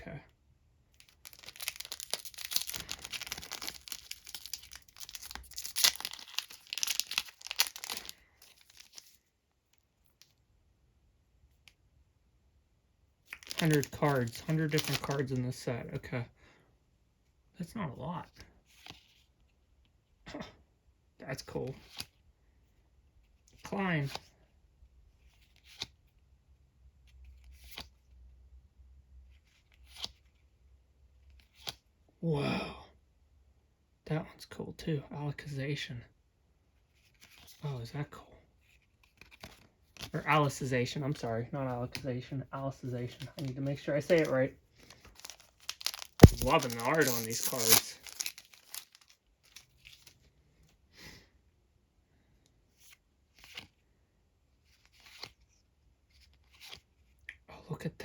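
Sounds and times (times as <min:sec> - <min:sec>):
foil wrapper tearing and crinkling: 0:01.0 - 0:09.1, 0:13.4 - 0:15.2, 0:44.9 - 0:49.6
cards flicking: 0:45.2 - 0:49.0.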